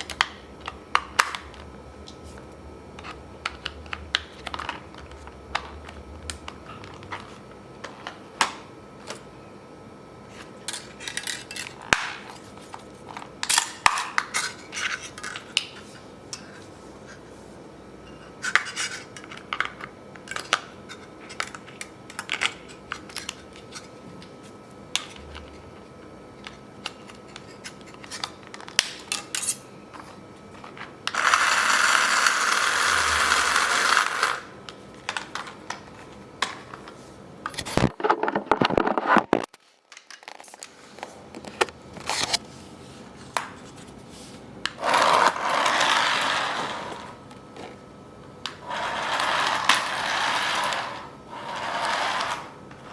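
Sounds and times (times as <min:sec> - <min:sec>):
small electric motor running: 0:31.1 - 0:34.5, 0:44.8 - 0:47.1, 0:48.6 - 0:52.6.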